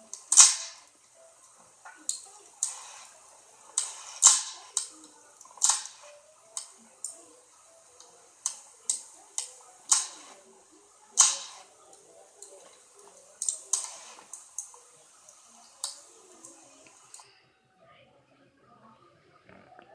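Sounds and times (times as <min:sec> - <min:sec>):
sharp pops of fire: 0:00.0 - 0:07.2, 0:08.3 - 0:10.4, 0:11.2 - 0:16.2
wood fire crackling: 0:00.0 - 0:17.3
faint hiss: 0:00.0 - 0:19.9.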